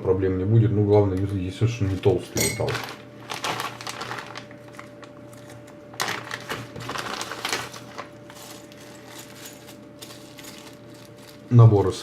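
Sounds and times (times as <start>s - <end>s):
faint steady hum: 0.0s - 12.0s
small plastic and metal parts rattling: 8.4s - 11.4s.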